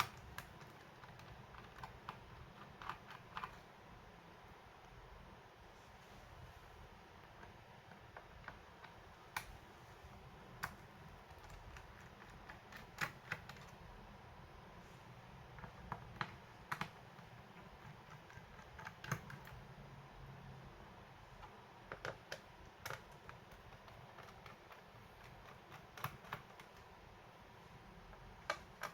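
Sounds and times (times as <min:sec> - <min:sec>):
small clicks and taps on plastic: 0:15.4 - 0:19.6, 0:21.4 - 0:26.9, 0:28.1 - 0:28.9.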